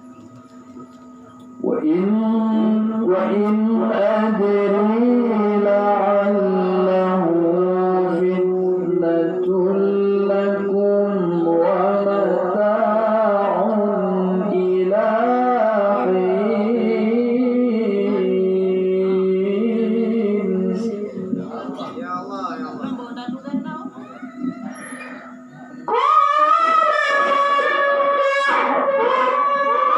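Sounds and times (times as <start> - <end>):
man reciting melodically: 1.6 - 23.7.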